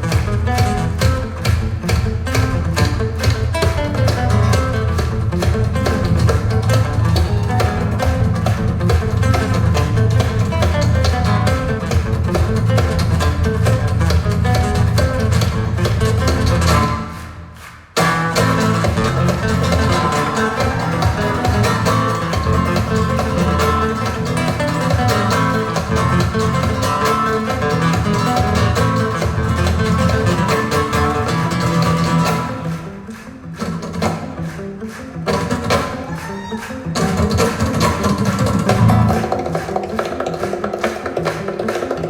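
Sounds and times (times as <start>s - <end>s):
recorded music over loudspeakers: 0.0s - 17.3s, 18.0s - 34.3s.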